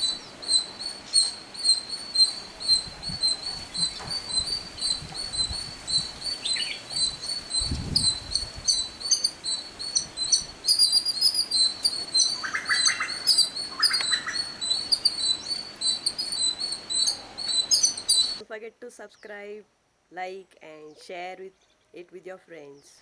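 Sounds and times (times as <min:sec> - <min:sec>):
bird rattling calls: 0:00.0 - 0:18.4
small birds chirping: 0:00.0 - 0:23.0.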